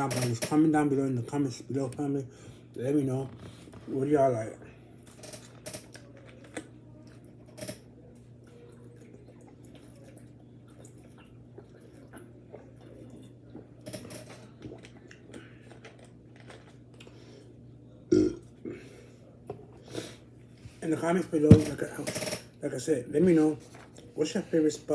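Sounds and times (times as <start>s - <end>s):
person chewing food: 8.4s - 13.8s, 14.4s - 17.5s.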